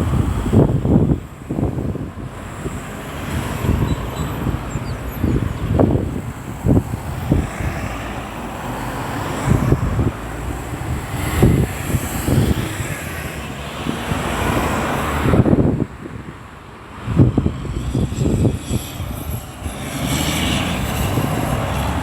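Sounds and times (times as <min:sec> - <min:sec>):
road traffic: 0:00.0 - 0:22.0
wind buffeting microphone: 0:00.0 - 0:22.0.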